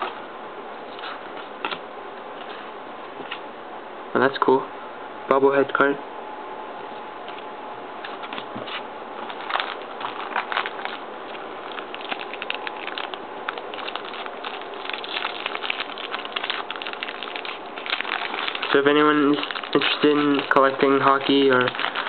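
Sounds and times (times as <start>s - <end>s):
cards clicking and rustling: 9.2s - 22.0s
steady hiss: 9.4s - 22.0s.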